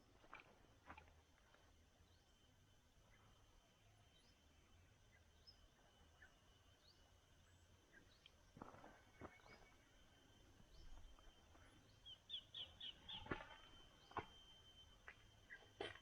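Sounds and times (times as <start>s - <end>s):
small bird chirping: 11.9s - 14.3s.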